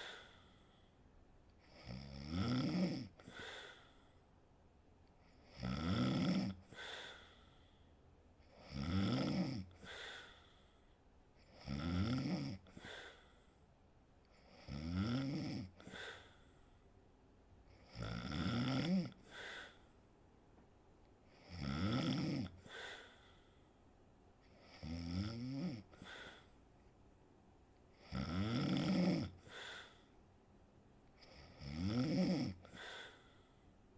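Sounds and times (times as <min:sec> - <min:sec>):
woman snoring: 0:01.6 - 0:03.9, 0:05.4 - 0:07.4, 0:08.5 - 0:10.4, 0:11.5 - 0:13.2, 0:14.5 - 0:16.3, 0:17.7 - 0:19.8, 0:21.4 - 0:23.2, 0:24.5 - 0:26.5, 0:28.0 - 0:30.1, 0:31.2 - 0:33.3.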